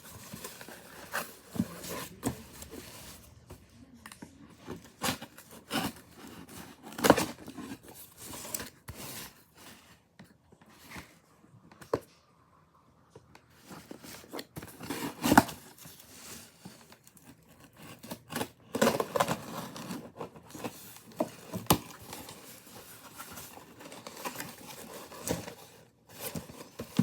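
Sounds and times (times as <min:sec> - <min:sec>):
packaging scrapes and rustles: 0:00.0 - 0:03.6, 0:04.5 - 0:10.1, 0:13.5 - 0:27.0.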